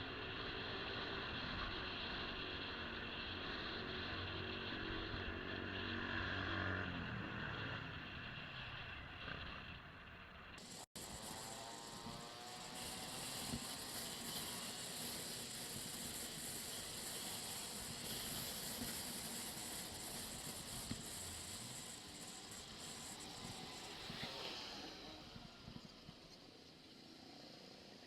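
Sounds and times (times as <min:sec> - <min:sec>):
motorcycle wind and road noise: 0:00.1 - 0:26.6.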